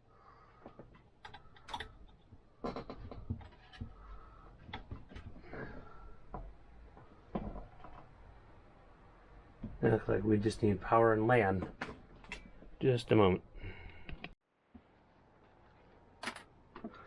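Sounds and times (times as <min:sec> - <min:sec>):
cables and plugs clicking: 0:00.7 - 0:04.0.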